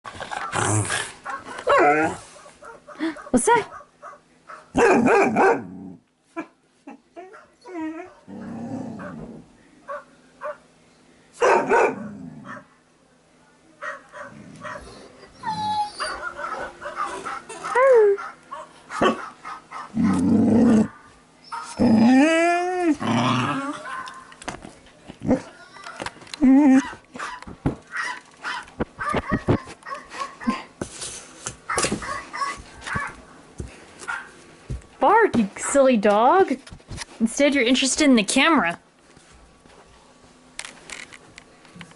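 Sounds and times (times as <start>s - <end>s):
dogs barking: 0.3s - 5.7s, 9.9s - 10.6s, 11.4s - 12.8s, 13.8s - 20.2s, 23.7s - 24.3s, 26.8s - 30.6s, 31.7s - 33.2s, 34.0s - 34.4s
dog drawn-out cries: 13.9s - 20.1s, 31.7s - 33.1s.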